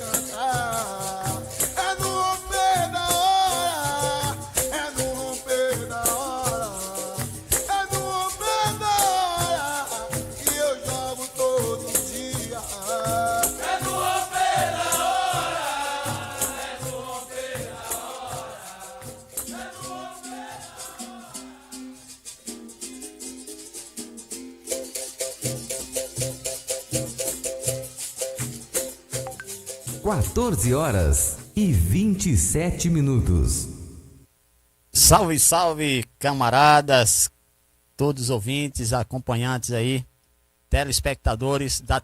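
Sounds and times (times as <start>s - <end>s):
person singing: 0.0s - 21.7s, 30.0s - 34.1s
shaker rattle: 0.0s - 30.1s
berimbau: 24.6s - 34.1s.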